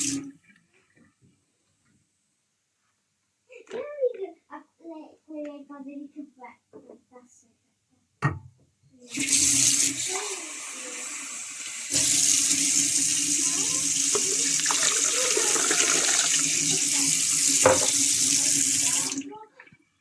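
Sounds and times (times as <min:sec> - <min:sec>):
water running from a tap: 0:00.0 - 0:00.3, 0:09.1 - 0:19.4.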